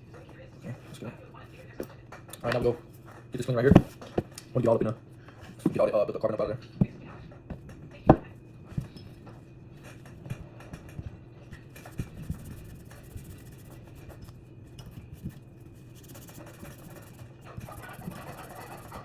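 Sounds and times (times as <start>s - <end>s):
scratchy scrubbing strokes: 15.1s - 19.0s.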